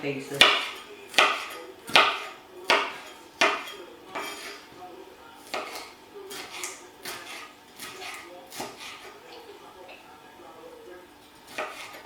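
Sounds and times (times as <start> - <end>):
knife chopping on board: 0.4 - 4.6, 5.4 - 9.2, 11.5 - 12.0.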